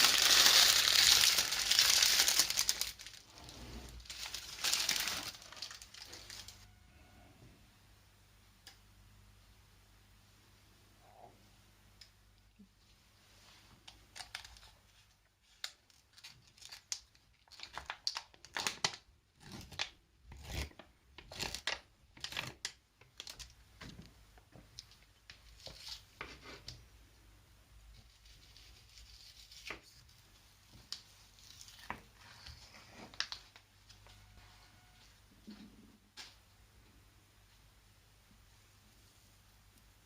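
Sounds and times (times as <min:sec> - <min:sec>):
crinkling and rustling: 0:00.0 - 0:06.7, 0:12.6 - 0:26.8, 0:27.9 - 0:36.4.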